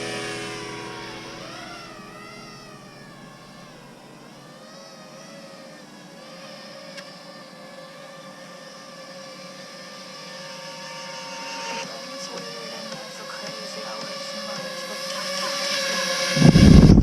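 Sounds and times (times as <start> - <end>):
quadcopter motors whining: 0.0 - 17.0.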